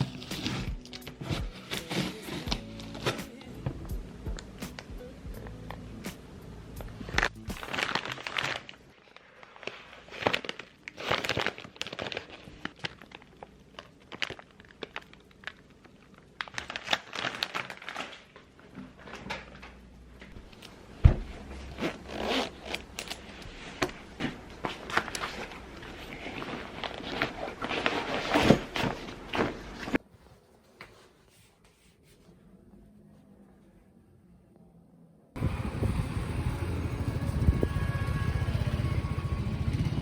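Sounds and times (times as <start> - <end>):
rustling and crinkling: 0.0 - 3.8, 6.8 - 34.0.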